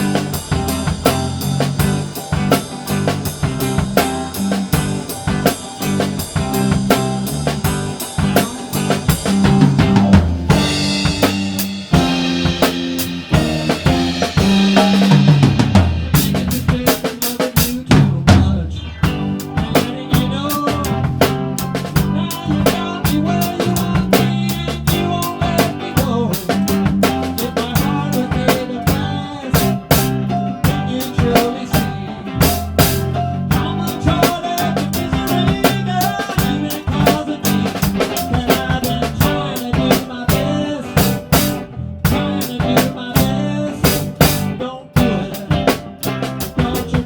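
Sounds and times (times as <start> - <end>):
snare drum: 0.0 - 18.5
bass drum beat: 0.0 - 47.0
bass guitar: 0.0 - 47.0
guitar: 0.0 - 47.0
rock drum kit playing: 0.0 - 47.0.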